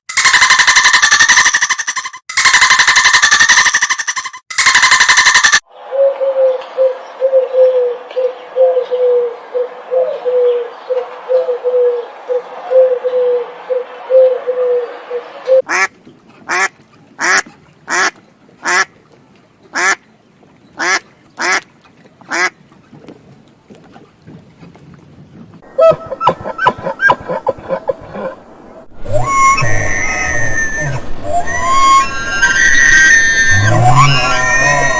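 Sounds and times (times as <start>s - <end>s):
ducks quacking: 6.7s - 19.0s, 19.7s - 20.0s, 20.8s - 22.6s.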